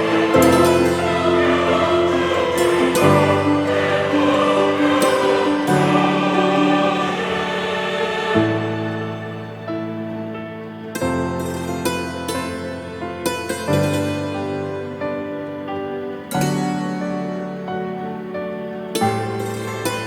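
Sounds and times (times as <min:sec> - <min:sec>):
low accompaniment: 0:00.0 - 0:12.6
choir singing sustained chords: 0:00.0 - 0:20.0.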